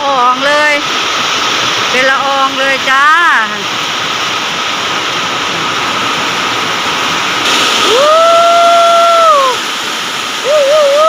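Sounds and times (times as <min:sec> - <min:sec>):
heavy rain pouring: 0:00.0 - 0:11.0
person's drawn-out oh: 0:07.8 - 0:09.6, 0:10.4 - 0:11.0.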